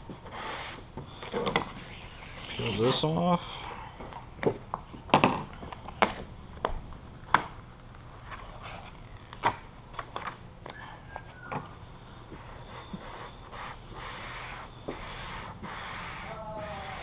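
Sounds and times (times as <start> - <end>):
vinyl backing peeling crackles: 7.8 - 10.4.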